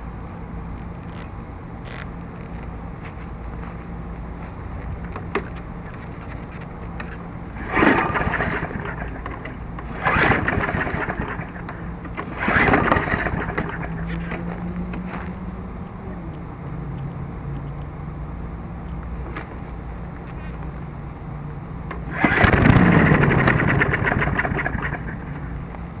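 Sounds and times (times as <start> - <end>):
lawn mower engine cranking: 1.0 - 16.0, 18.9 - 26.0
pull-cord recoil starter: 4.5 - 15.5, 21.8 - 25.9.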